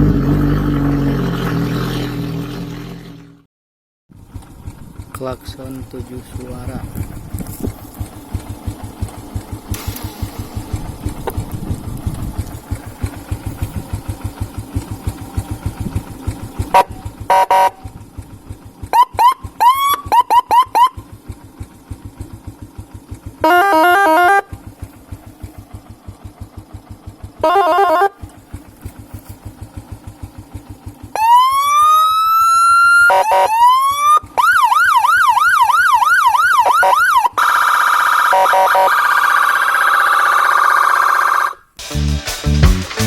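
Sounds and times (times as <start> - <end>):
electronic siren horn: 16.7 - 17.9, 18.9 - 21.0, 23.4 - 24.5, 27.4 - 28.2, 31.2 - 41.7.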